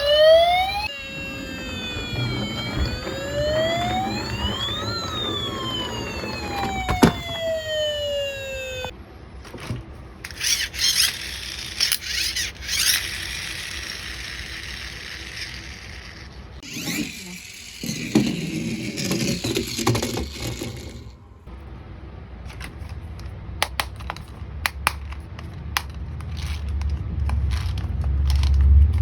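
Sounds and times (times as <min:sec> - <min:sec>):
high hissy whirring: 0:00.0 - 0:08.9
toy siren wail: 0:00.0 - 0:08.9, 0:10.3 - 0:21.1.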